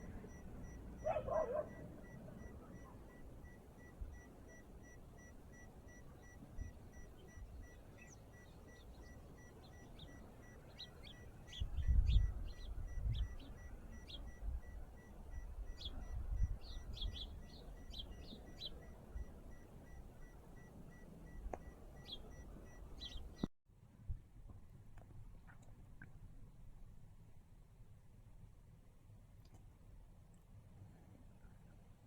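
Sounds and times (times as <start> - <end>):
small birds chirping: 0.0 - 23.5.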